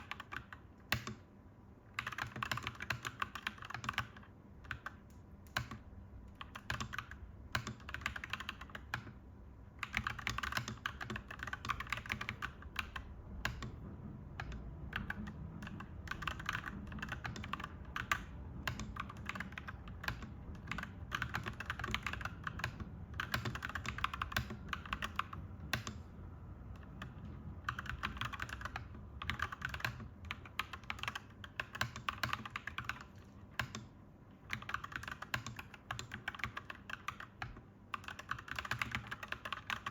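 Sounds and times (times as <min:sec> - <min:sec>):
mechanical keyboard typing: 0:00.0 - 0:01.3, 0:01.9 - 0:09.2, 0:09.8 - 0:39.9.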